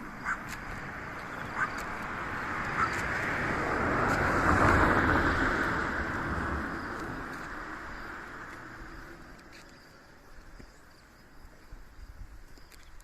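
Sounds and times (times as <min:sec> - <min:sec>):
road vehicle passing by: 0:00.0 - 0:10.4.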